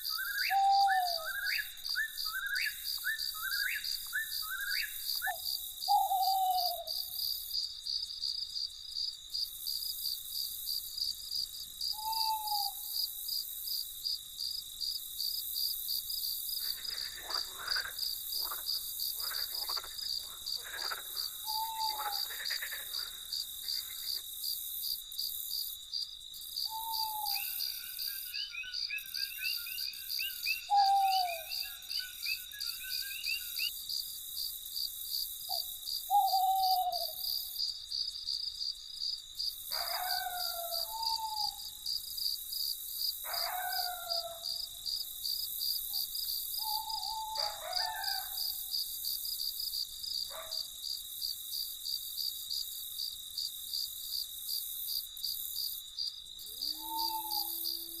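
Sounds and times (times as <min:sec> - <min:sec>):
crickets chirping chorus: 0:00.0 - 0:58.0
owl-like hoots: 0:00.2 - 0:01.5, 0:05.9 - 0:07.0, 0:12.0 - 0:12.8, 0:16.6 - 0:24.2, 0:26.7 - 0:27.8, 0:30.7 - 0:32.1, 0:35.5 - 0:37.2, 0:39.7 - 0:41.7, 0:43.3 - 0:44.5, 0:46.6 - 0:48.4, 0:56.5 - 0:58.0
fast chattering calls: 0:16.6 - 0:24.2
frogs croaking: 0:16.6 - 0:24.6, 0:43.3 - 0:48.8.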